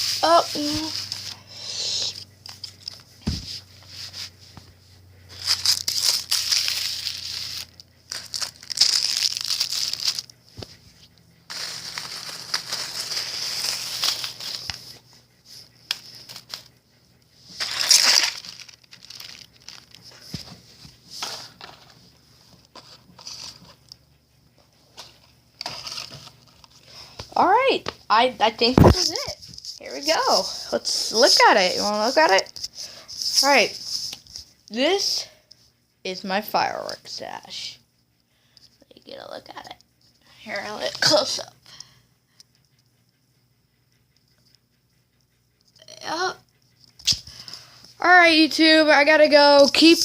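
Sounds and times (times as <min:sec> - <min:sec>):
packaging crinkling and rustling: 0:05.3 - 0:10.4, 0:11.5 - 0:15.0, 0:17.6 - 0:20.5, 0:25.0 - 0:26.9.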